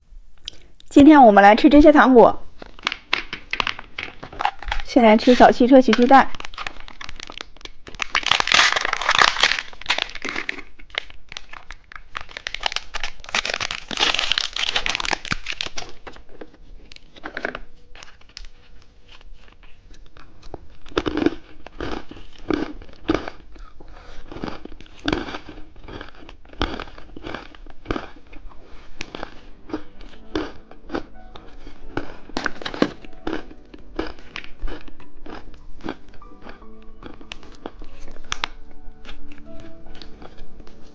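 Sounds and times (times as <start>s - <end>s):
candy wrapper rustling and tearing: 2.4s - 40.9s.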